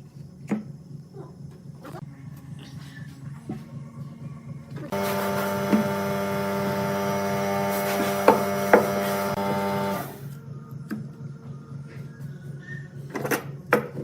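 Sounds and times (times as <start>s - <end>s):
electric motor hum: 4.9s - 10.3s.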